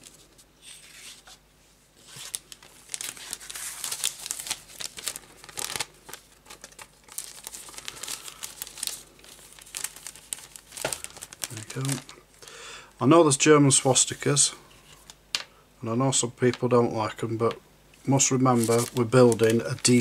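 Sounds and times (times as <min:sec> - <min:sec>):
plastic bag crinkling: 0:02.0 - 0:12.2, 0:18.2 - 0:20.0.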